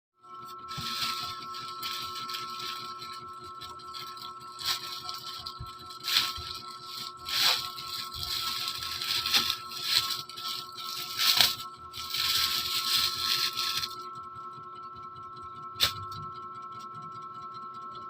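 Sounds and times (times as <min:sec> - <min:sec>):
plastic packaging crinkling: 0:00.6 - 0:14.0.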